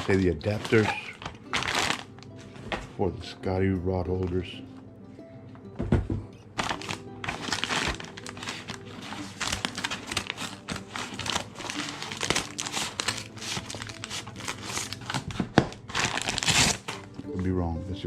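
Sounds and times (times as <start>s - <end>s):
packaging crinkling: 0.0s - 2.8s, 6.6s - 17.1s
background music: 0.0s - 18.0s.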